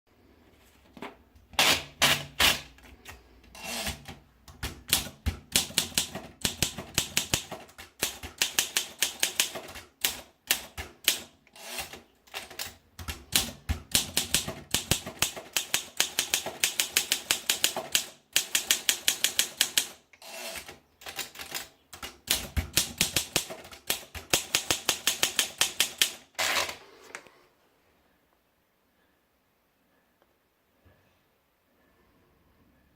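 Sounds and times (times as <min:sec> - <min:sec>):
manual typewriter key strikes: 0:03.8 - 0:20.0, 0:20.6 - 0:26.2.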